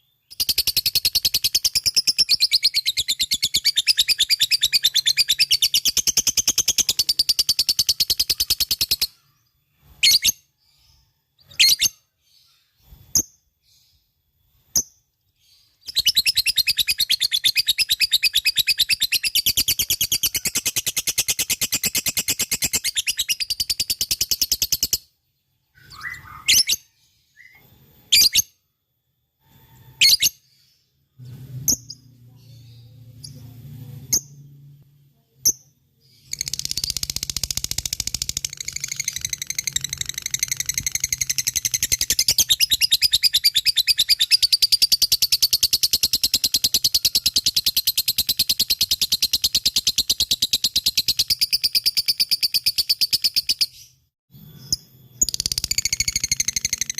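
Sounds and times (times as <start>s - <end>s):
lovebird chattering trill: 0.3s - 9.4s, 15.9s - 25.0s, 36.1s - 53.9s, 54.6s - 56.9s
faint low hum: 31.1s - 38.4s.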